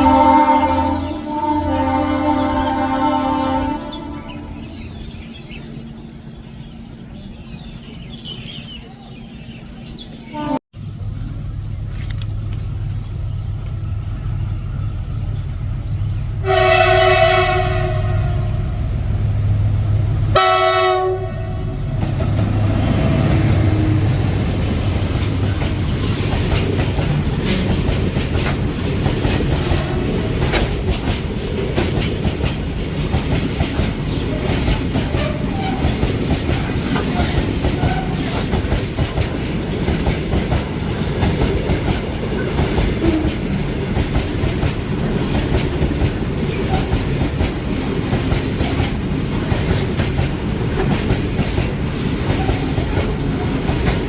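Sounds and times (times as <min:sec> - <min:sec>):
train horn blasts: 0:00.0 - 0:04.6, 0:10.3 - 0:10.6, 0:16.4 - 0:18.9, 0:20.3 - 0:22.0
train wheels clickety-clack: 0:21.9 - 0:22.8, 0:24.5 - 0:54.0.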